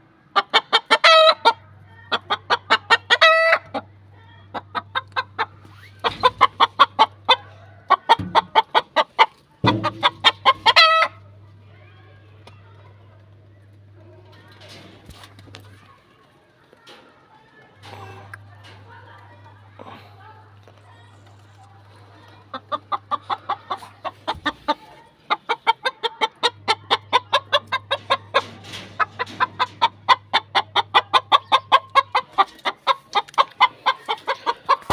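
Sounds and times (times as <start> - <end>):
rooster clucking: 0.3 - 11.4, 21.2 - 34.9.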